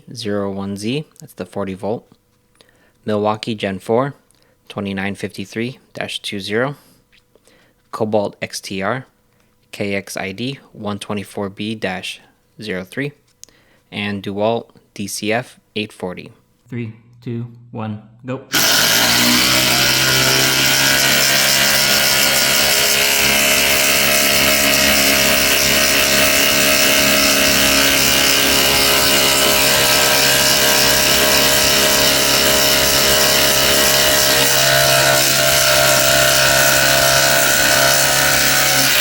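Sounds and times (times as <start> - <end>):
impact drivers hammering: 18.6 - 39.0.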